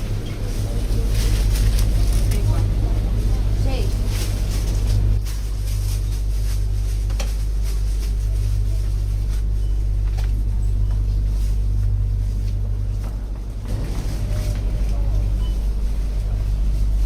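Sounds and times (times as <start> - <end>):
low hum: 0.0 - 17.0.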